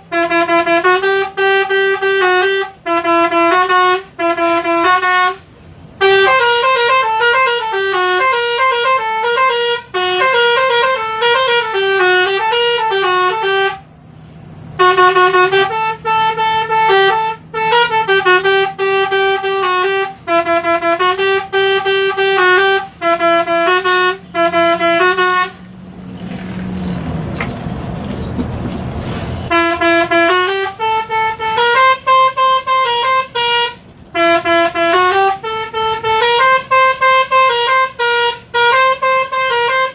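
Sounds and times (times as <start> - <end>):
horn trumpets playing a tune: 29.5 - 39.9.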